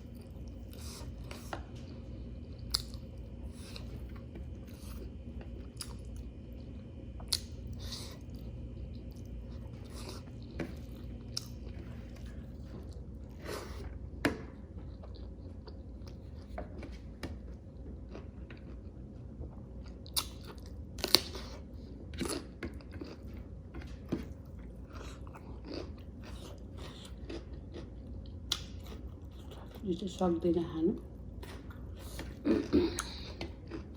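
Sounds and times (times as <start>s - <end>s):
person chewing food: 0.0s - 29.9s, 31.0s - 33.9s.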